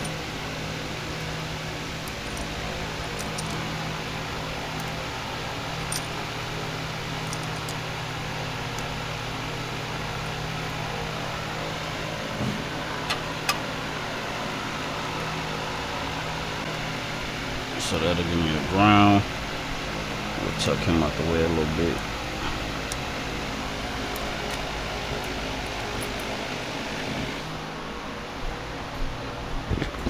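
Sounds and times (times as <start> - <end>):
fan humming and whirring: 0.0 - 30.0.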